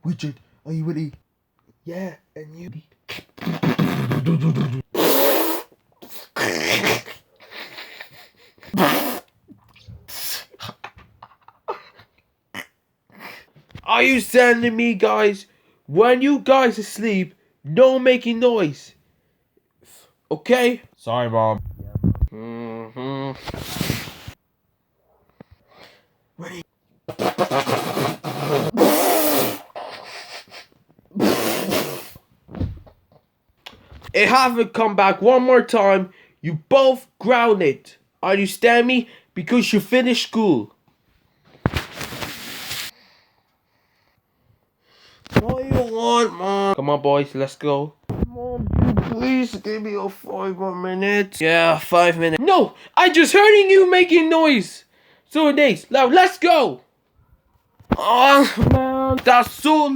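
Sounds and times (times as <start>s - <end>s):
boys making fart noises: 3.1s - 10.9s, 21.9s - 24.3s, 27.1s - 32.9s.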